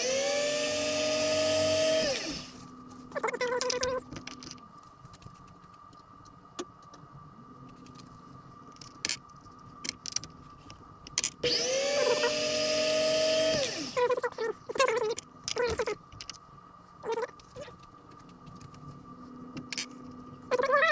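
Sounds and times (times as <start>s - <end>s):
small electric motor spinning: 0.0s - 2.7s, 11.4s - 15.2s.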